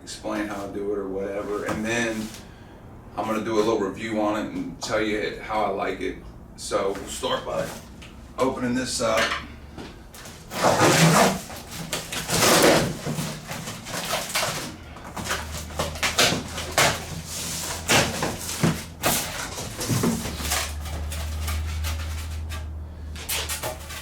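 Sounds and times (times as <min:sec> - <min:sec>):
cardboard box tearing and rustling: 0:10.2 - 0:24.0.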